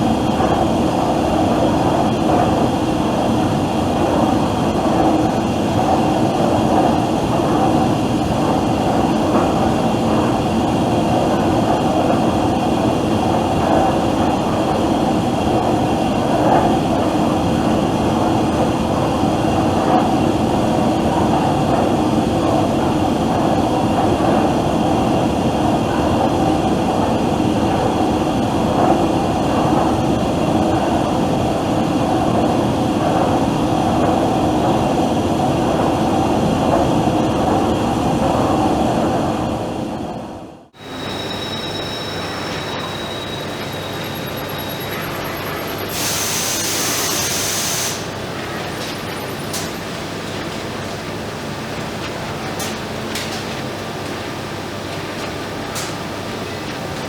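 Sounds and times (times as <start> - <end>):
machinery running: 40.8 - 57.0.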